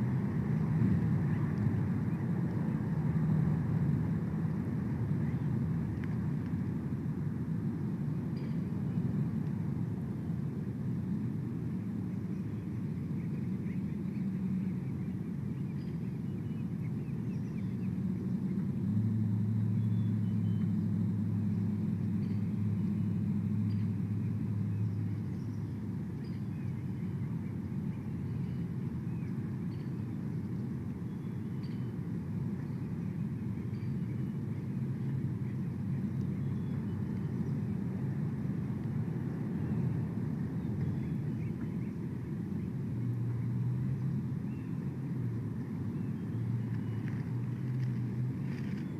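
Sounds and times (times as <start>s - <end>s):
distant engine rumble: 0.0s - 48.9s.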